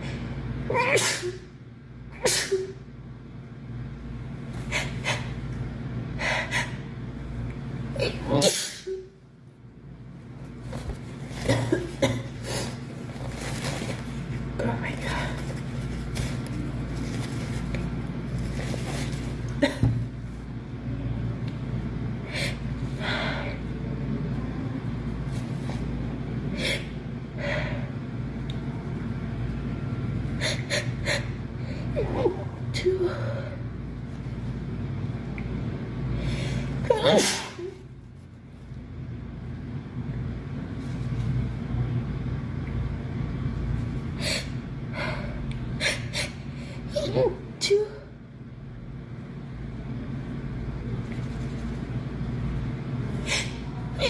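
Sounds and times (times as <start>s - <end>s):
steady low hum: 0.0s - 54.0s
girl sneezing: 0.7s - 1.5s, 2.1s - 2.8s, 8.0s - 9.1s, 36.8s - 37.8s.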